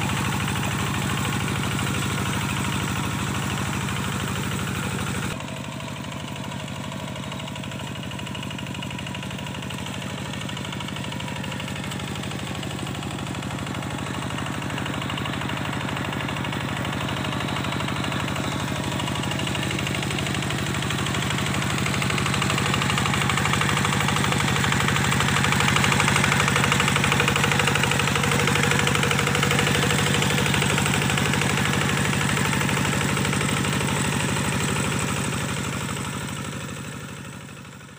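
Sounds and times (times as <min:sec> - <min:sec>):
tractor diesel engine running: 0:00.0 - 0:37.9.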